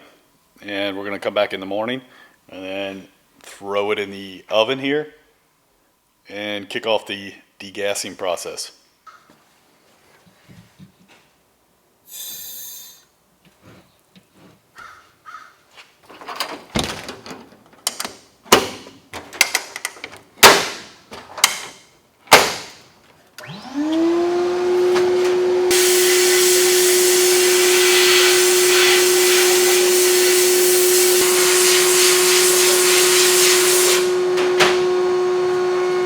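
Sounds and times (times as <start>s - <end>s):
loud hiss of blasting air: 12.1s - 13.0s, 25.7s - 34.2s
motor humming: 23.4s - 36.0s.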